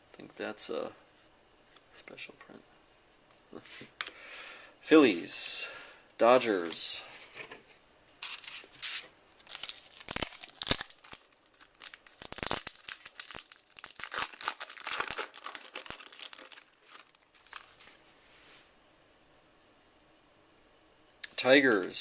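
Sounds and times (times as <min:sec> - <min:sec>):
wrapper tearing and crinkling: 0:08.2 - 0:18.0.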